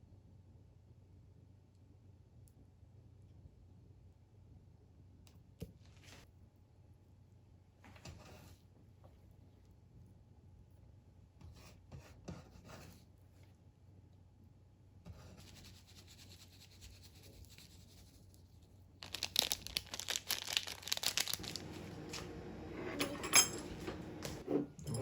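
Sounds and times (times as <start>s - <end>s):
crinkling and rustling handling noises: 19.0s - 25.0s.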